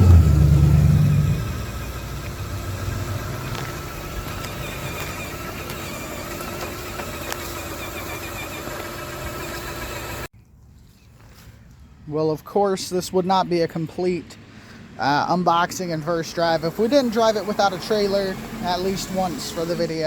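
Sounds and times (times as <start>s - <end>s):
toy truck motor whining: 0.0s - 10.3s, 16.3s - 20.0s.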